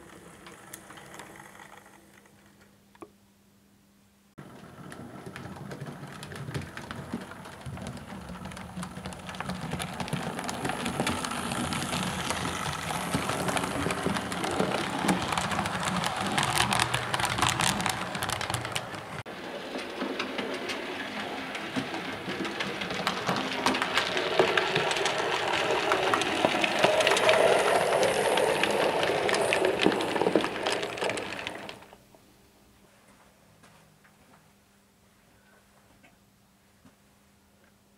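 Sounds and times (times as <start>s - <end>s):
model train running on track: 4.8s - 32.0s.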